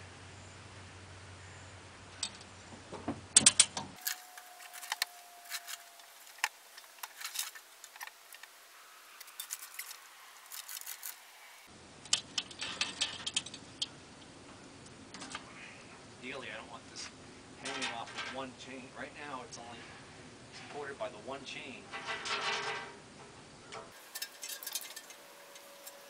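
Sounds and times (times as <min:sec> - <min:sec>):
chain rattle: 0:24.0 - 0:26.0.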